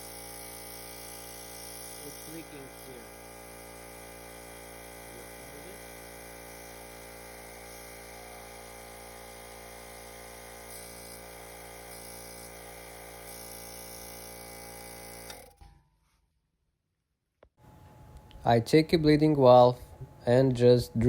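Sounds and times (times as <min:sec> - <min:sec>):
air hissing from valve: 0:00.0 - 0:15.4
electric air compressor running: 0:00.0 - 0:15.6.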